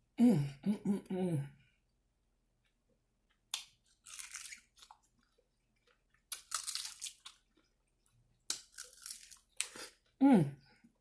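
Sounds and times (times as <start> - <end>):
person chewing and crunching food: 2.6 - 11.0.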